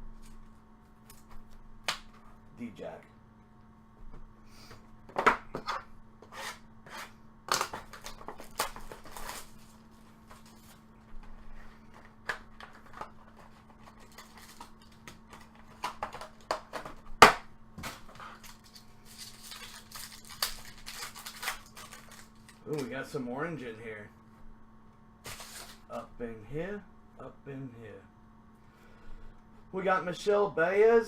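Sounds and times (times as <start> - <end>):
low electrical hum: 0.0 - 31.0
packaging crinkling: 7.5 - 10.8, 12.5 - 16.5, 18.2 - 22.9.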